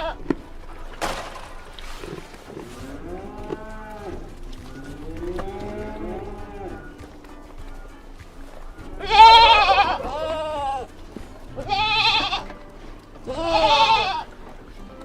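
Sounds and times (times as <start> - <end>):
livestock bleating: 2.1 - 7.8, 8.8 - 14.4.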